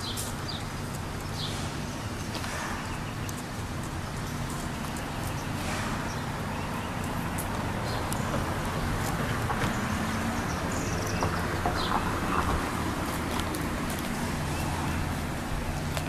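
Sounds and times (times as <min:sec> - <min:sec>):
traffic rumble: 0:00.0 - 0:16.0.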